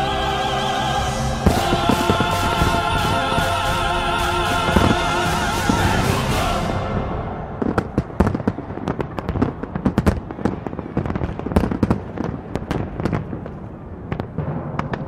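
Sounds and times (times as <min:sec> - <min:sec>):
fireworks bangs and crackles: 0:01.4 - 0:15.0.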